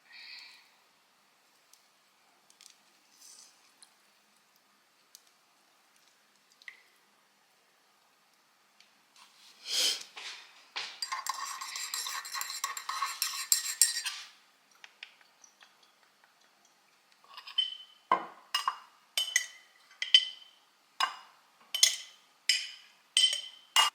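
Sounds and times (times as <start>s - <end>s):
dishes and cutlery clinking: 10.8s - 14.3s, 15.6s - 23.9s.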